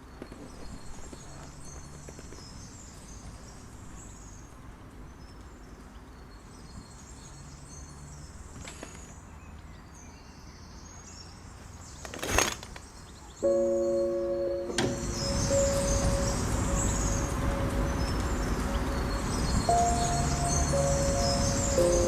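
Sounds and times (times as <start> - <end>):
distant bird calls: 5.1 - 22.0
steady low hiss: 12.9 - 22.0
rushing noise: 14.6 - 22.0.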